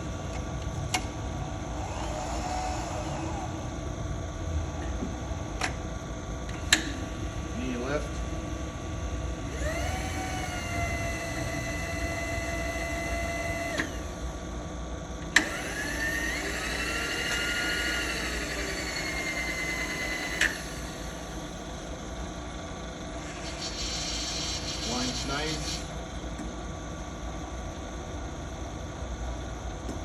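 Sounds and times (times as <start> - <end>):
motor whine spinning up: 0.1 - 4.6, 9.4 - 14.5, 15.3 - 25.9.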